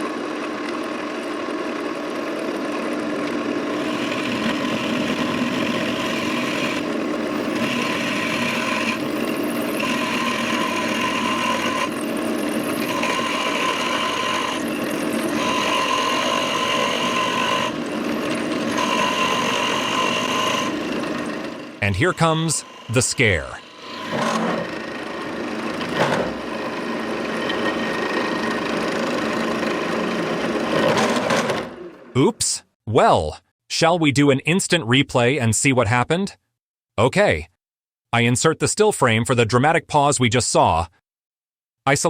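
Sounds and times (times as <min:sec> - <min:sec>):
drill press cutting wood: 0:03.7 - 0:31.8.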